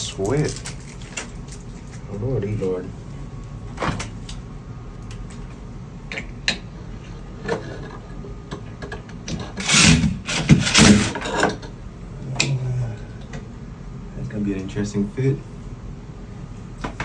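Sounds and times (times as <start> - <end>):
rubbing and clatter: 9.3 - 11.7.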